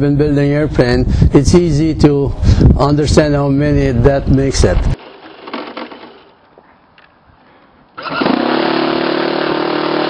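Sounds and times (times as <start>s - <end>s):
model airplane engine buzzing: 8.0s - 10.0s.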